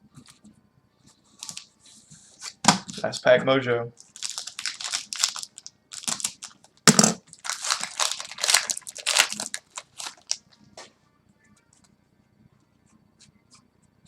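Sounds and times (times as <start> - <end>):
foil wrapper crinkling: 1.4 - 1.7, 4.0 - 10.6.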